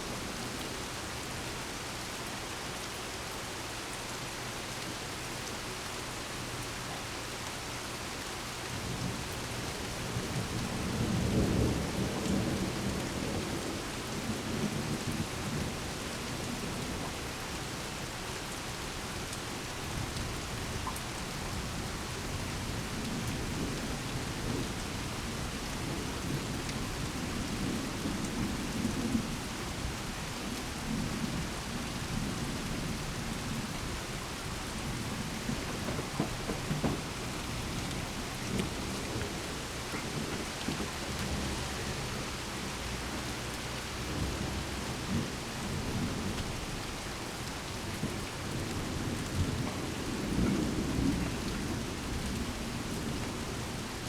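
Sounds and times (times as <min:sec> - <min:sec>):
steady rain falling: 0:00.0 - 0:54.0
low rolling thunder: 0:08.7 - 0:17.4, 0:19.8 - 0:46.9, 0:47.8 - 0:53.8.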